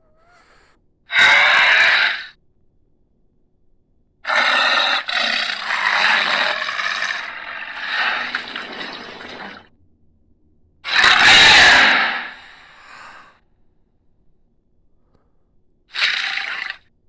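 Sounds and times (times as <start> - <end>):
harsh raspy creature call: 1.1 - 2.4, 4.2 - 9.6, 10.9 - 12.8, 15.9 - 16.8.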